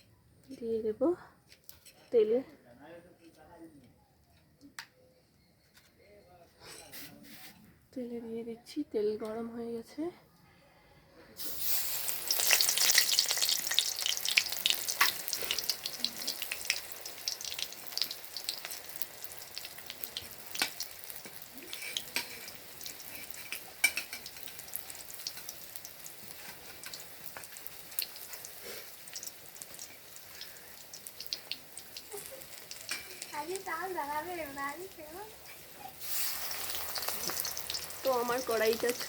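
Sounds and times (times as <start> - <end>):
fritters sizzling in hot oil: 11.4 - 39.0.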